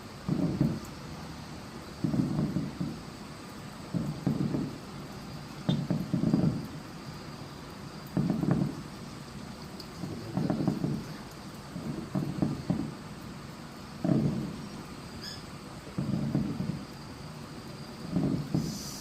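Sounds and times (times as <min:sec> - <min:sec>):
firework shells bursting: 0:00.0 - 0:19.0.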